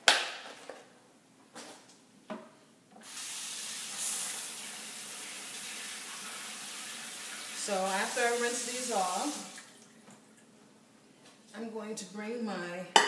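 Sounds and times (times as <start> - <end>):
kitchen tap running: 3.0 - 10.0.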